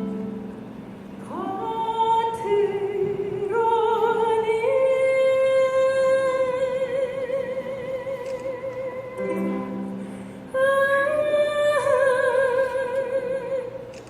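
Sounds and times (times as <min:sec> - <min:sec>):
high voice singing with vibrato: 0:01.2 - 0:14.0.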